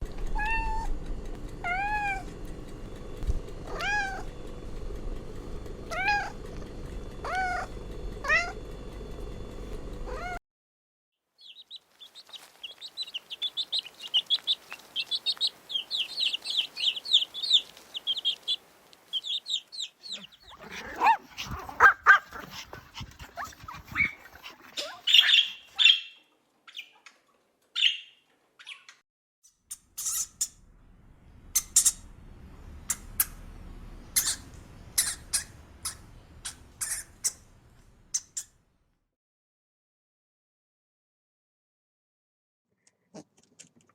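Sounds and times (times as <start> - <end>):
steady background hum: 0.0 - 10.4, 11.5 - 26.0, 29.7 - 38.8
cat meowing: 0.4 - 0.9, 1.6 - 2.3, 3.7 - 4.3, 5.9 - 6.4, 7.2 - 8.6, 10.1 - 10.4
rapid high-pitched chirping: 11.4 - 22.7
squeaky calls and clicks: 11.6 - 30.6, 34.2 - 37.5, 38.1 - 38.5.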